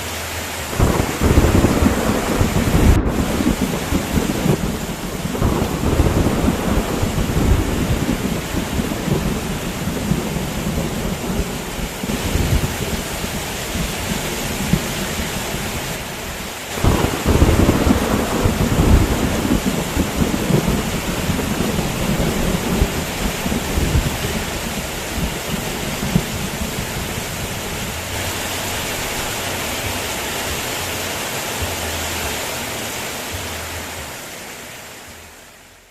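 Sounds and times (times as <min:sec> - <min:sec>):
heavy rain hissing: 0:00.0 - 0:35.9
rolling thunder: 0:00.7 - 0:16.1, 0:16.7 - 0:30.0.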